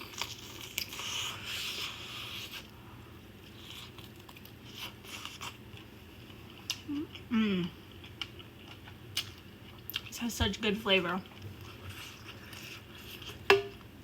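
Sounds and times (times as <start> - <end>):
biting and chewing sausage: 0.0 - 7.3.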